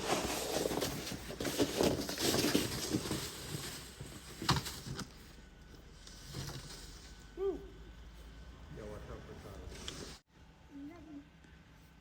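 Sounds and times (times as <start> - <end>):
snow shovel crunching and scraping: 0.0 - 3.0.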